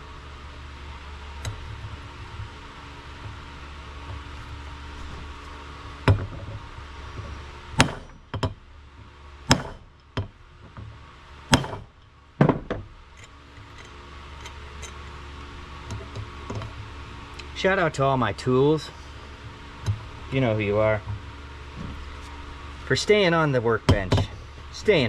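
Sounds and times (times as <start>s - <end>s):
low hum: 0.0s - 25.0s
hammer striking metal: 7.8s - 8.5s, 9.5s - 10.3s, 11.5s - 11.9s.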